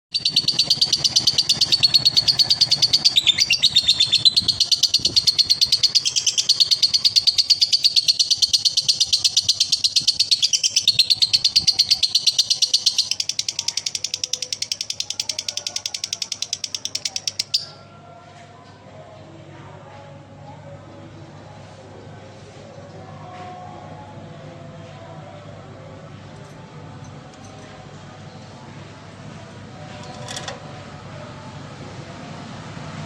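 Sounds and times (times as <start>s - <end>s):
lovebird chattering: 0.1s - 17.8s.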